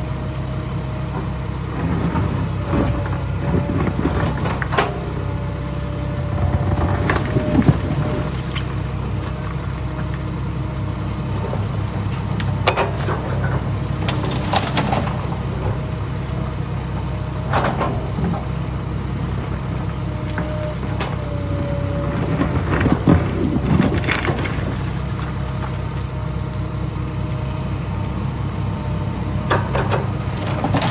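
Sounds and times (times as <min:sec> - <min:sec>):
diesel machinery running: 0:00.0 - 0:30.9.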